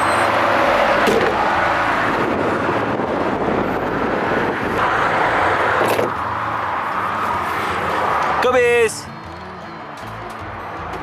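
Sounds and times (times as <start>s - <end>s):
highway traffic rushing: 0.0s - 11.0s
wind on microphone: 1.4s - 6.2s.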